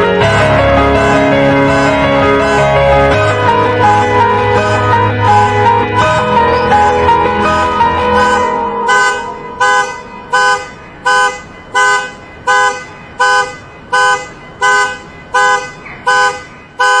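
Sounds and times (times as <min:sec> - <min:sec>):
car alarm horn honks: 0:05.6 - 0:17.0.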